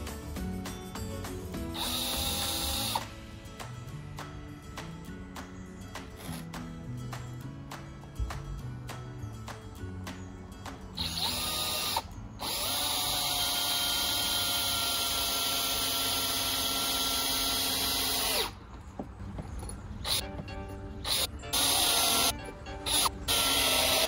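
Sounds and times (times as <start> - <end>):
electric drill running: 1.7 - 3.1, 11.0 - 18.6, 21.0 - 22.3, 22.9 - 24.0.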